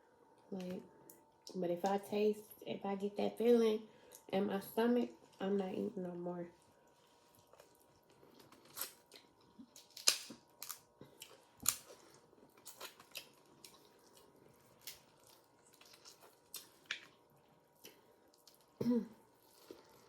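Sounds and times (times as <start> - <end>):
crab shells cracking: 8.4 - 13.9.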